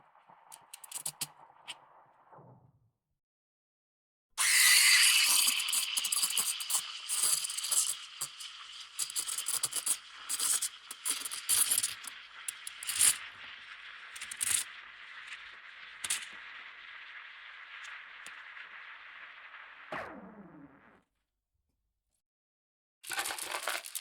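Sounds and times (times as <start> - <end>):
coffee machine hiss: 4.4 - 19.1.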